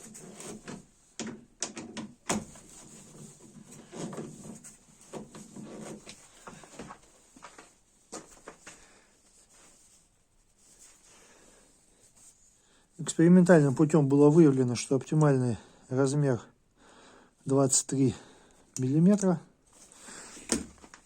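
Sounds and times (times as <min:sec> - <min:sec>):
rubber hose handling clicks and knocks: 0:00.0 - 0:08.9, 0:18.7 - 0:21.0.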